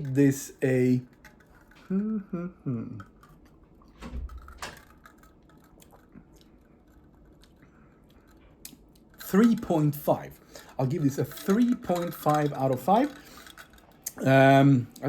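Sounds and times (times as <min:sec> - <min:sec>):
person humming: 0:01.8 - 0:03.1.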